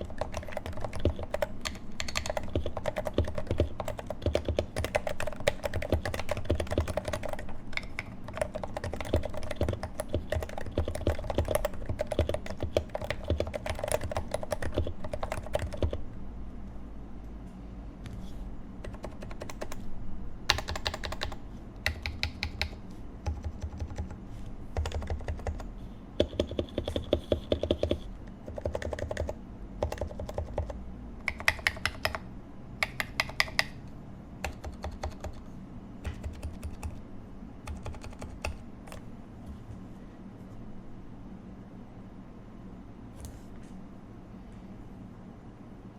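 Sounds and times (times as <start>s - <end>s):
keyboard typing: 0.0s - 16.1s, 18.8s - 19.8s, 20.5s - 33.8s, 34.4s - 37.0s, 37.7s - 39.0s.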